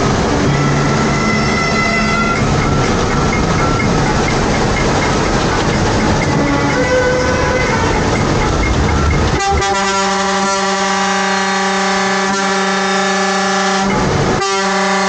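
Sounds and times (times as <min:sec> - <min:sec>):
vehicle and road rumble: 0:00.0 - 0:15.0
vehicle horn long blast: 0:09.4 - 0:15.0.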